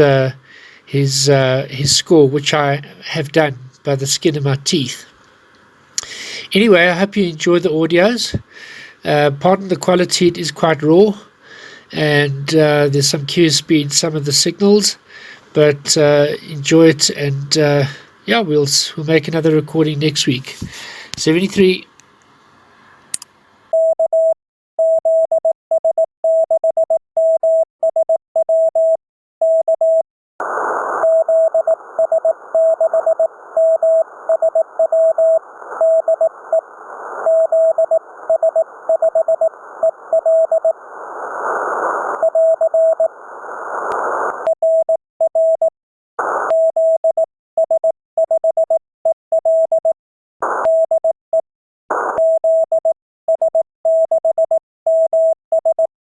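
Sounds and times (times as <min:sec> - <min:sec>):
receiver hiss: 0:00.0 - 0:23.7, 0:30.4 - 0:44.5
morse code tone: 0:23.8 - 0:30.0, 0:37.3 - 0:40.8, 0:42.2 - 0:43.1, 0:46.5 - 0:50.0, 0:52.0 - 0:55.9.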